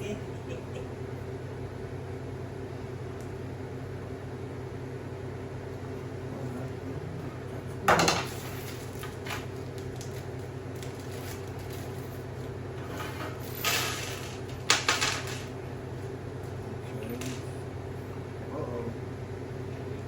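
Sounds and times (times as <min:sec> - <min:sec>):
metal cage parts clanking: 0:12.8 - 0:15.5.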